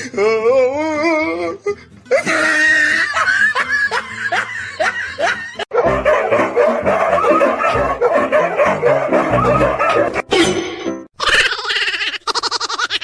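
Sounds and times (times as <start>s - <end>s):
person laughing in snickers: 2.1s - 5.7s, 11.2s - 13.0s.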